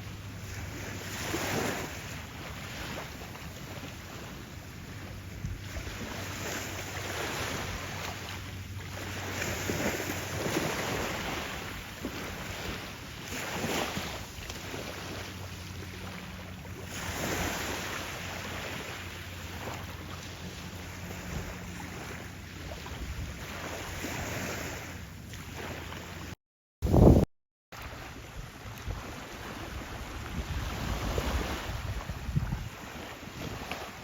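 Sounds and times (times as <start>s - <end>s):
small waves breaking on sand: 0.0s - 27.2s, 27.8s - 34.0s
wind buffeting microphone: 26.1s - 27.2s, 28.2s - 34.0s.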